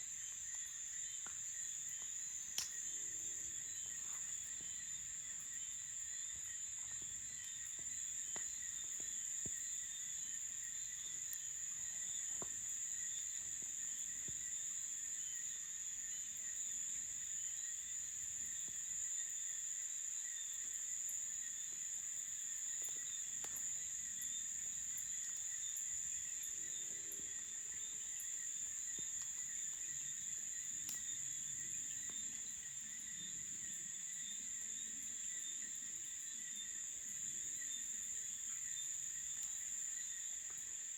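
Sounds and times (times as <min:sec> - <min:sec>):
high insect trill: 0:00.0 - 0:40.9
lower pulsing insect calls: 0:00.0 - 0:40.9
faint clicks: 0:02.6 - 0:02.8.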